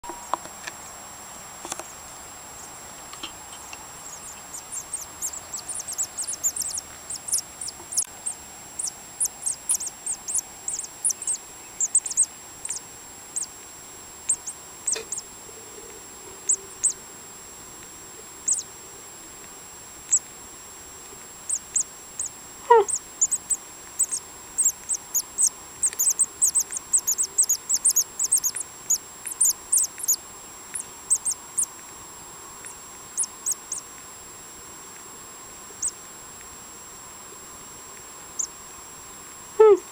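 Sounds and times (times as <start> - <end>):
nestling birds cheeping: 3.4 - 13.6, 14.2 - 15.4, 16.4 - 17.0, 18.4 - 18.7, 21.4 - 31.7, 32.6 - 33.9, 35.8 - 36.0.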